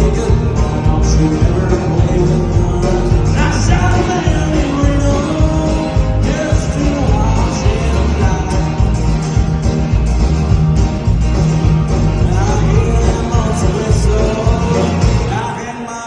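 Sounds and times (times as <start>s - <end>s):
person singing: 0.0s - 9.3s, 12.1s - 16.0s
live country band playing: 0.0s - 16.0s.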